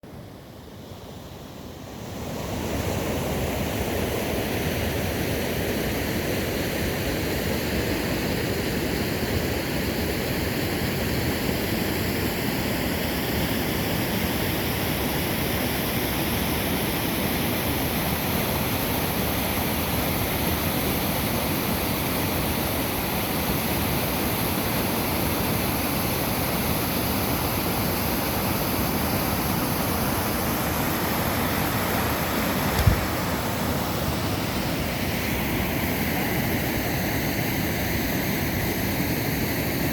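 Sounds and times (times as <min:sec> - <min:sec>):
whitewater rapid rushing: 0:14.5 - 0:37.3.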